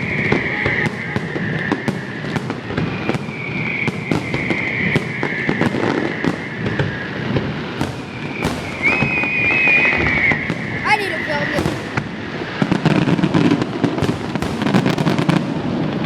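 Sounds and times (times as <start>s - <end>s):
thin firework whistle: 0.0s - 1.9s, 3.0s - 6.9s, 7.8s - 10.7s
firework bangs and crackling pops: 0.0s - 16.0s.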